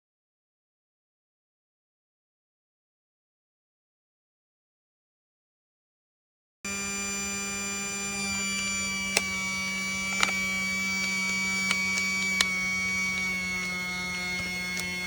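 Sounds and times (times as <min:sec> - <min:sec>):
toy vacuum motor whirring: 0:06.7 - 0:15.0
sharp clicks: 0:09.0 - 0:15.0.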